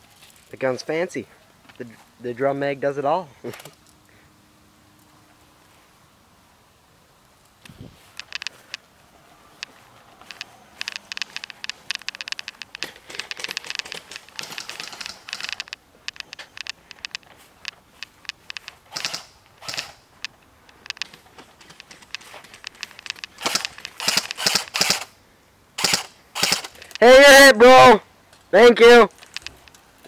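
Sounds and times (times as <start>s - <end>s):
airsoft guns firing bursts: 18.9s - 20.0s, 21.1s - 25.1s, 25.8s - 26.8s.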